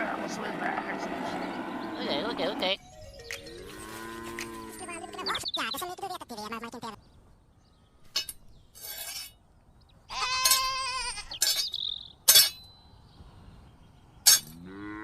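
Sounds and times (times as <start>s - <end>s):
farm animal bleating: 3.7s - 5.4s, 10.1s - 11.4s.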